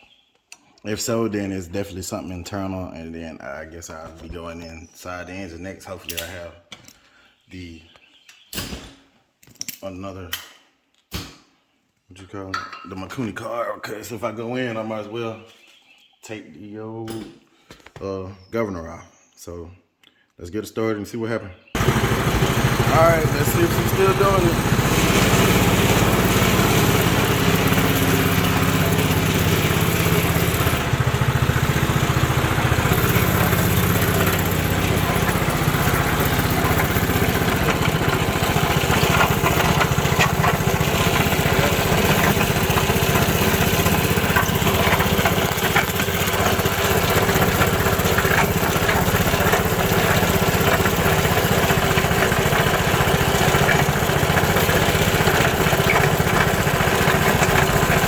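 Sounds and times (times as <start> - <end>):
small engine running: 21.8 - 58.0.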